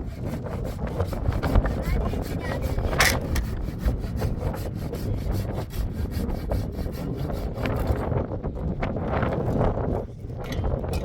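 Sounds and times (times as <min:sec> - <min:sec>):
rapid scraping on wood: 0:00.0 - 0:08.1.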